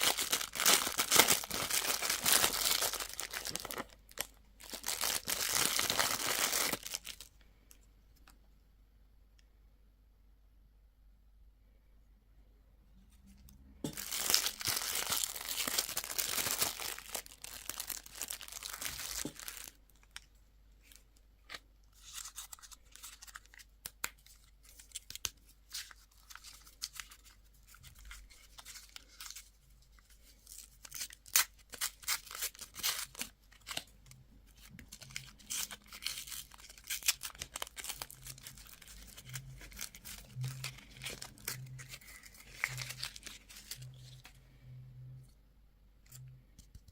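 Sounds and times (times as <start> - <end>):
candy wrappers tearing and crinkling: 0.0 - 7.4, 13.9 - 20.3, 22.0 - 44.4.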